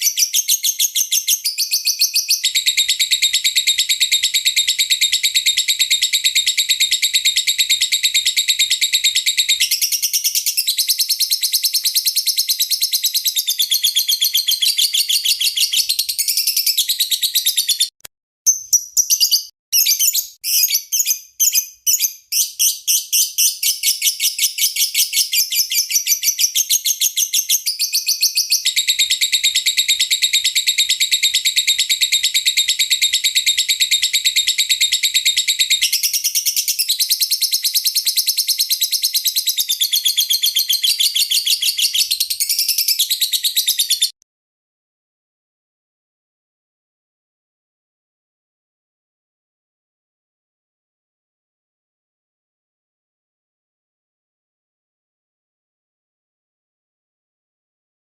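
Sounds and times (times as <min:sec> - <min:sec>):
bird singing high chirps: 0:00.0 - 0:44.2.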